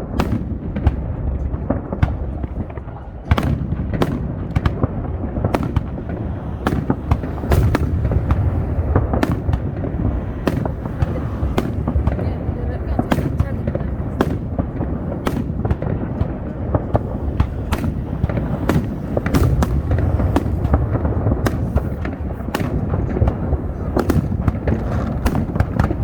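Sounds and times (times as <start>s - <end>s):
fireworks bangs and cracks: 0.0s - 26.0s
low rumble of distant fireworks: 0.0s - 26.0s.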